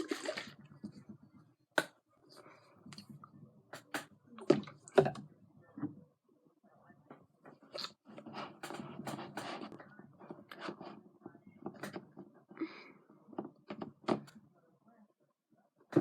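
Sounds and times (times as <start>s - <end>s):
slime stirred in a bowl: 0.0s - 1.1s.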